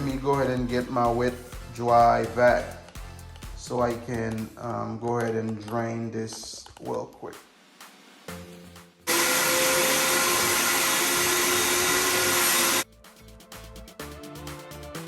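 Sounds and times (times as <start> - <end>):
background music with a beat: 0.0 - 4.6, 6.6 - 9.1, 12.8 - 15.0
wet dry vac whining motor: 9.1 - 12.8.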